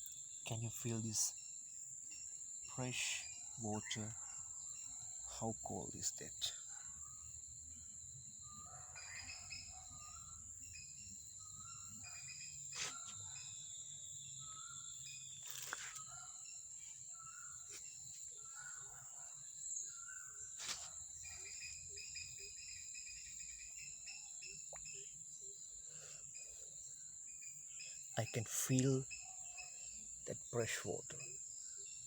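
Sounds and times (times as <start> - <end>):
bird chirps: 0.0 - 32.0
insects droning: 0.0 - 32.0.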